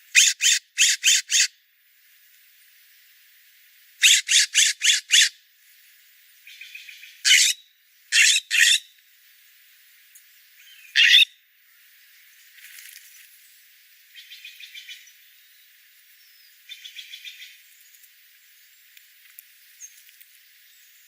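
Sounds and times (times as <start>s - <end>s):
wild bird calling: 0.0s - 1.5s, 4.0s - 5.3s, 10.7s - 11.3s.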